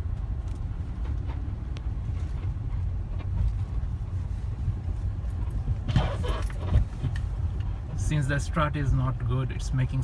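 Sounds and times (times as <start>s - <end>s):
road and tyre rumble: 0.0s - 10.0s
faint suspension squeaks: 5.4s - 7.2s.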